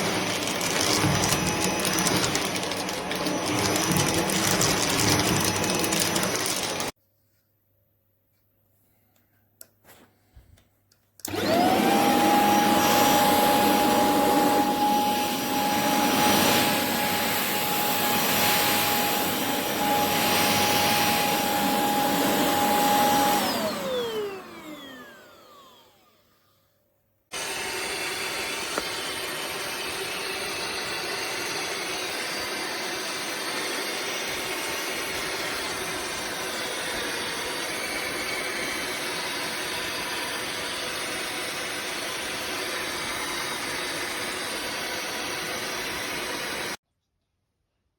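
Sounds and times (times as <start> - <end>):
vacuum cleaner motor whine: 0.0 - 7.0, 11.2 - 26.7, 27.3 - 46.8.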